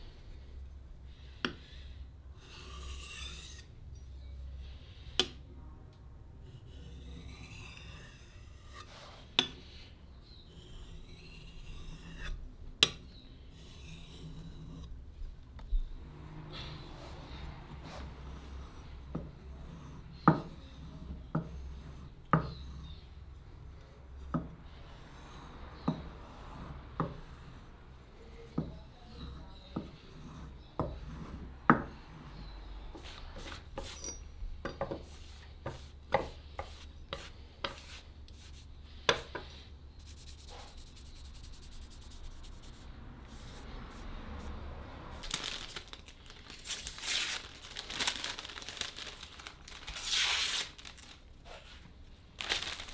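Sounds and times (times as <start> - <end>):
blade scraping: 2.4 - 3.7.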